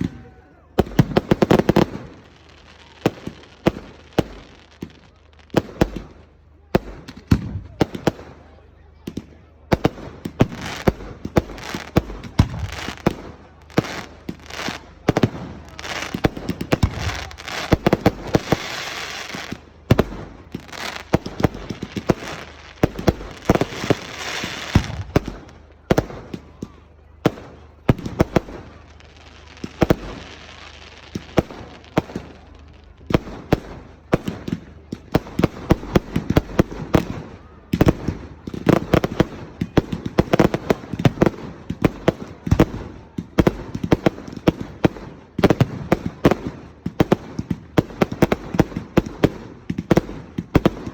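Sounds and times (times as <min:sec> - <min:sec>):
fireworks bangs: 0:00.0 - 0:50.9
fireworks crackling: 0:00.0 - 0:50.9.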